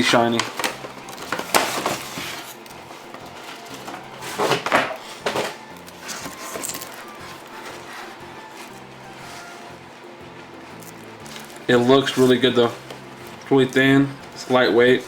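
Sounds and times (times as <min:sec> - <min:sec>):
plastic keyboard clattering: 0:00.1 - 0:02.4.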